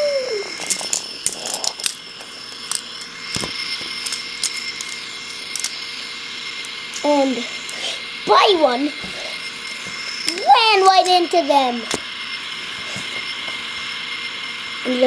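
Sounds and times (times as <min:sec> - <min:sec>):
faint high whine: 0:00.0 - 0:15.0
toy trains clicking and rattling: 0:00.0 - 0:15.0.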